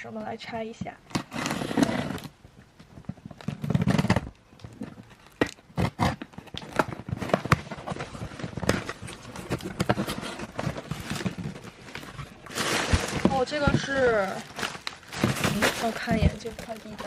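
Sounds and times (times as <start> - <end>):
packaging crinkling and rustling: 1.1 - 17.0
parcel packaging ripping: 3.4 - 17.0.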